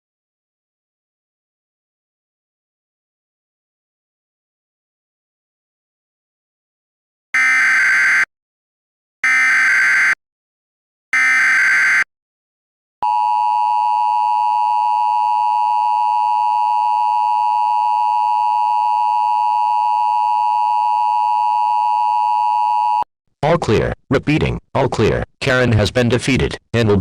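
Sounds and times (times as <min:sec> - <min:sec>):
emergency alert attention tone: 0:07.4 - 0:08.3, 0:09.2 - 0:10.2, 0:11.2 - 0:12.1.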